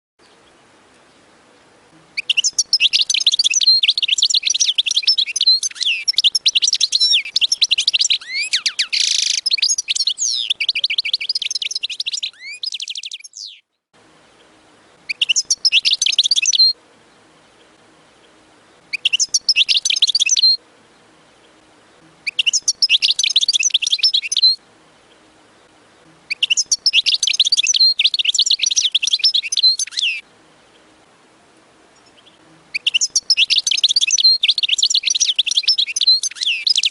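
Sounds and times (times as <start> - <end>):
goldfinch twittering song: 2.2 - 13.7, 14.3 - 20.6, 21.4 - 30.9, 32.0 - 36.9.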